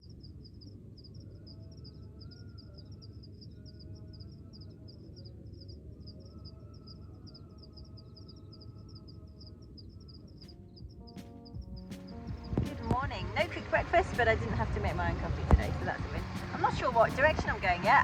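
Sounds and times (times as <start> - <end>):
small birds chirping: 0.0 - 18.0
steady low rumble: 10.3 - 18.0.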